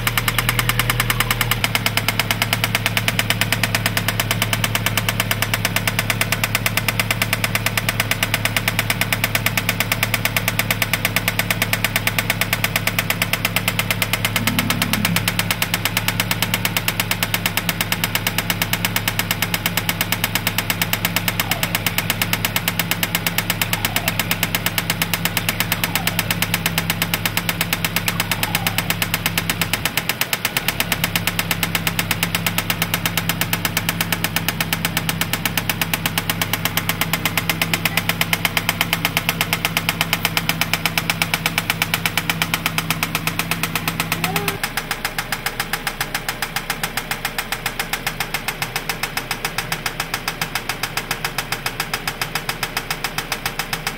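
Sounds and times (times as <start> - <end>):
engine knocking: 0.0 - 53.9
steady low hum: 14.3 - 15.7.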